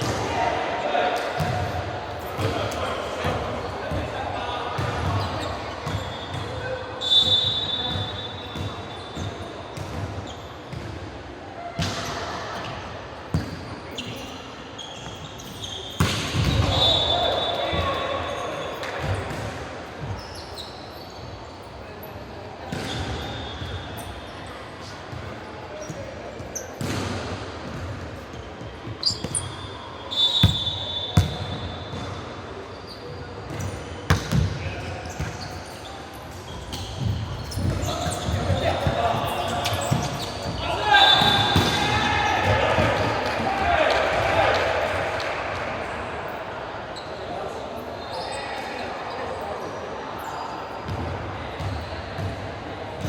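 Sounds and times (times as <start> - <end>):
gym hubbub: 0.0 - 53.0
shoes squeaking on floor: 4.8 - 10.8, 13.4 - 19.4, 20.0 - 21.7, 28.3 - 32.0, 32.7 - 42.4, 47.9 - 49.4
basketball bouncing on court: 26.8 - 28.0, 30.4 - 32.1.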